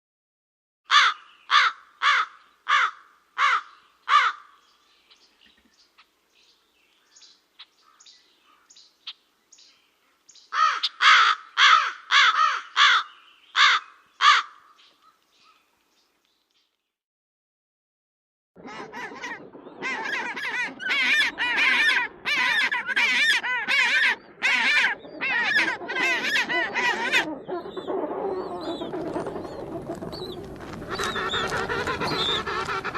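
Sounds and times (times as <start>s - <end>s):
crow cawing: 0.9s - 4.6s, 10.6s - 14.8s, 31.0s - 32.9s
faint bird calls and clicks: 5.1s - 9.2s, 12.8s - 17.0s, 27.0s - 32.9s.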